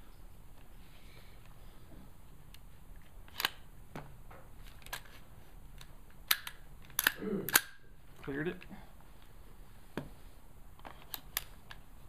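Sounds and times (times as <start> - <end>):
rifle bolt metallic clicks: 3.3 - 3.6, 5.8 - 7.8.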